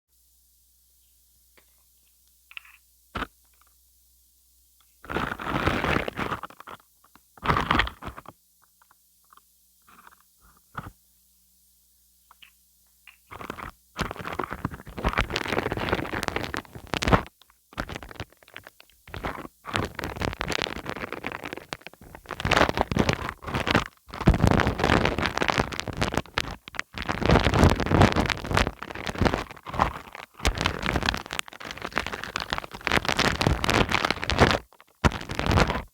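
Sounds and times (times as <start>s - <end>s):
glue film peeling and crackling: 13.1s - 35.9s.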